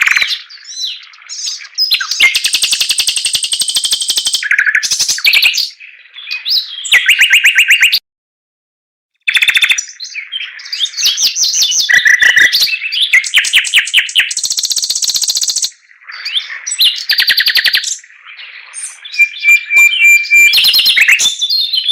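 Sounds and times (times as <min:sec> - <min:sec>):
bird singing trills: 0:00.0 - 0:08.0, 0:09.3 - 0:21.9.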